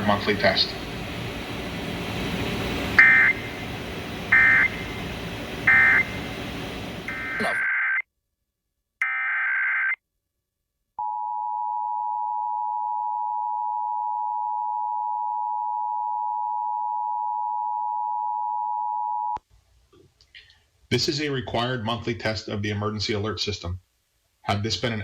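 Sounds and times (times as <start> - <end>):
warbling data burst: 2.5 - 7.8
two-tone attention signal: 5.7 - 6.2, 7.1 - 7.7.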